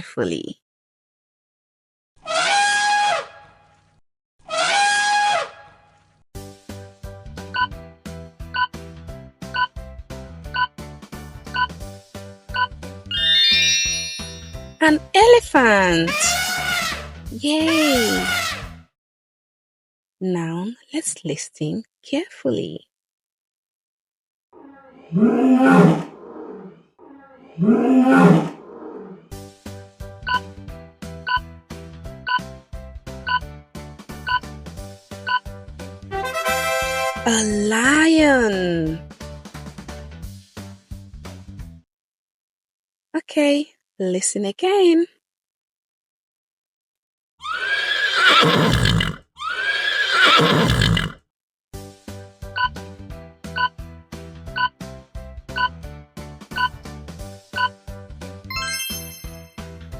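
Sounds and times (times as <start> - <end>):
light background music: 6.5 - 18.8, 29.4 - 40.8, 51.9 - 59.9
lion roaring: 24.6 - 29.3
horse whinnying: 47.4 - 51.2.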